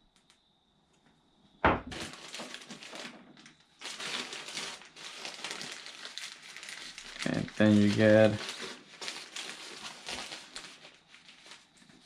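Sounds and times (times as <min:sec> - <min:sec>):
plastic packaging crinkling: 0:01.9 - 0:12.0.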